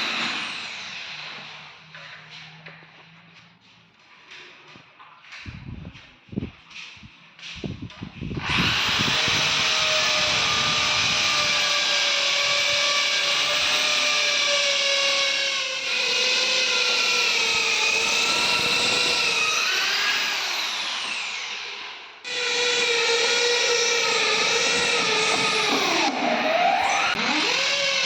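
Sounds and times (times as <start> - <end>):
electric drill whining: 0.0 - 1.8, 8.4 - 28.0.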